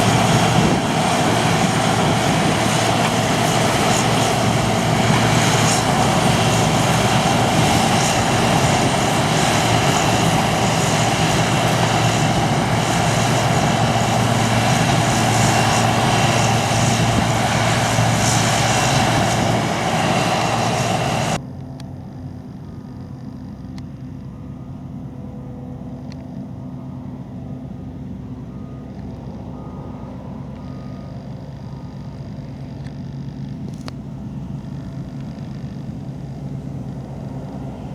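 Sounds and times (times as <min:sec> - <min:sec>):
harvest machinery running: 0:00.0 - 0:21.4, 0:24.3 - 0:37.9
diesel engine hum: 0:00.0 - 0:37.9
short beeps: 0:28.5 - 0:32.1.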